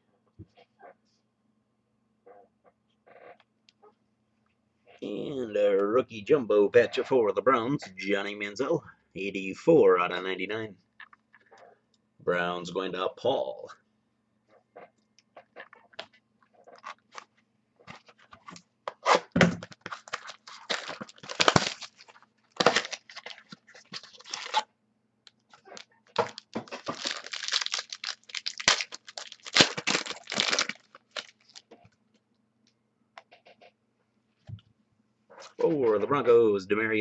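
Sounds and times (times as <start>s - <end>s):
packaging tearing and crinkling: 19.6s - 24.7s, 25.5s - 31.7s.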